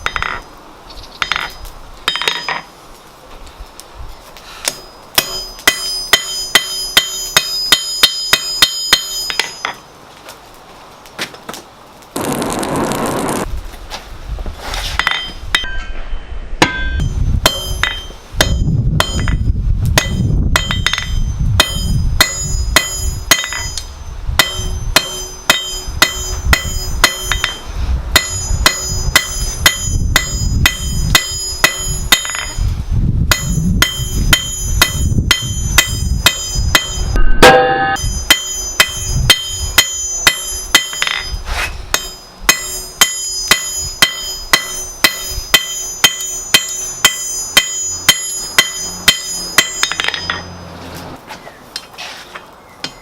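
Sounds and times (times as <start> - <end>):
hammer striking metal on anvil: 0.0 - 0.4, 1.2 - 2.7, 4.6 - 9.8, 15.0 - 16.0, 16.6 - 50.6
anvil ringing: 1.2 - 2.7, 4.7 - 9.9, 15.0 - 16.0, 16.6 - 32.7, 33.3 - 50.7.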